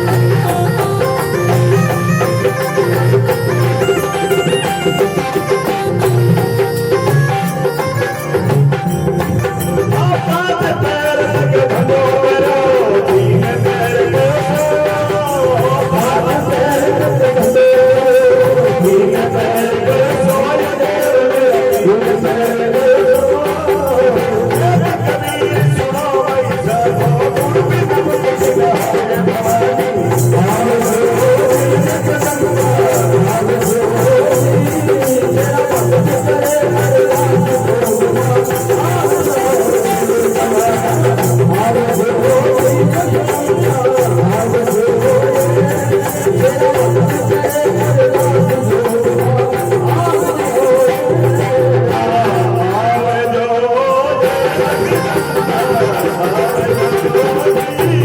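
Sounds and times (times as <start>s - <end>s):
wavering melody: 0.0s - 10.5s
steady drum beat: 0.0s - 53.2s
shaken rattle percussion: 21.8s - 51.7s.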